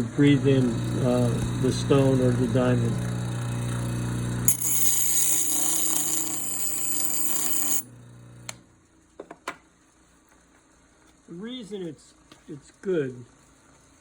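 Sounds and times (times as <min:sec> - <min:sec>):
dressing tool hissing on grinding wheel: 0:00.0 - 0:03.7
grinder motor hum: 0:00.0 - 0:08.6.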